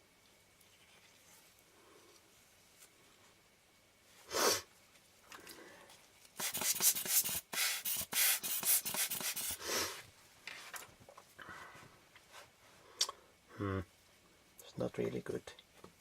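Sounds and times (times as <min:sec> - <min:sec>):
tissue rubbing on glass lens: 0:06.4 - 0:09.6.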